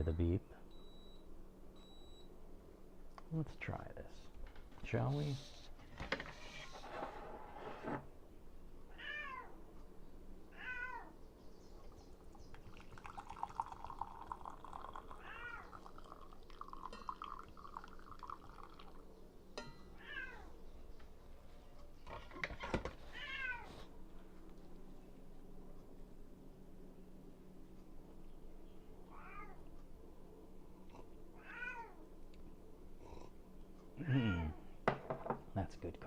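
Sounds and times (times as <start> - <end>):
cat meowing: 8.9 - 9.5, 10.5 - 11.1, 15.2 - 15.8, 20.0 - 20.5, 29.1 - 29.6, 31.4 - 32.0
liquid pouring into cup: 12.5 - 19.1.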